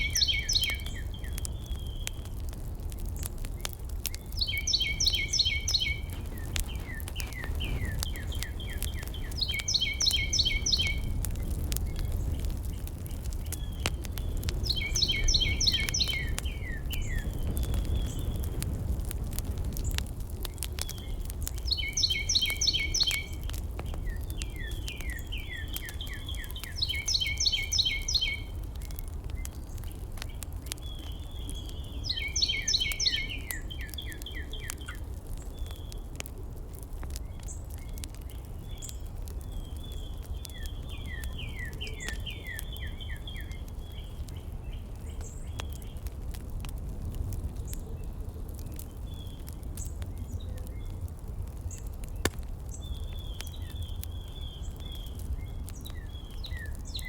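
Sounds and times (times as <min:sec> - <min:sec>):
songbirds singing trills: 0:00.0 - 0:18.7, 0:19.6 - 0:36.3, 0:37.0 - 0:46.2, 0:47.4 - 0:57.0
faint crackles: 0:00.0 - 0:57.0
steady low rumble: 0:04.6 - 0:21.8.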